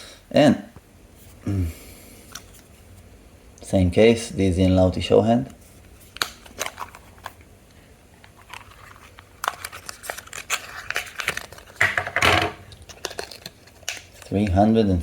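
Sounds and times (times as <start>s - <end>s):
packaging crinkling: 6.0s - 7.4s, 8.2s - 14.6s
packaging clicks: 6.1s - 7.4s, 8.3s - 11.9s, 12.7s - 14.4s.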